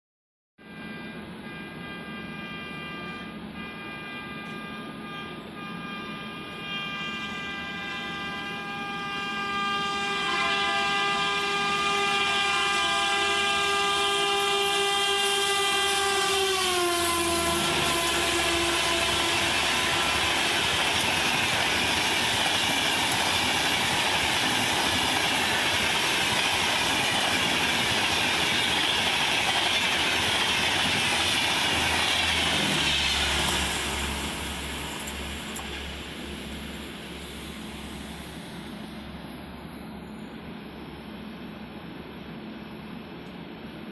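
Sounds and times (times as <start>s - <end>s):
train horn long blast: 0.6s - 28.1s, 32.4s - 38.1s
train coaches rushing and clattering: 7.4s - 40.7s.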